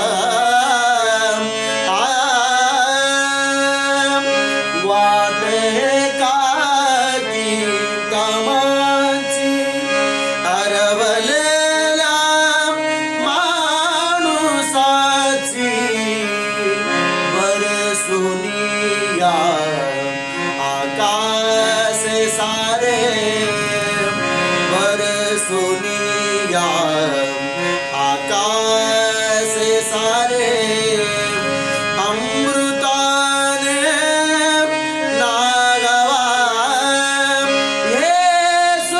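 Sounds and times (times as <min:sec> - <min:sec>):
man singing a slow melody: 0:00.0 - 0:38.9
steady drone: 0:07.3 - 0:38.1.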